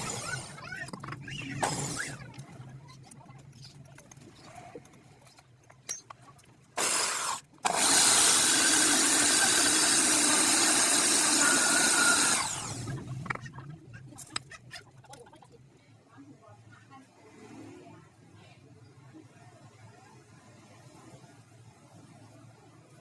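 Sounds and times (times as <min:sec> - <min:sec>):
electric power tool running: 0:06.8 - 0:12.9.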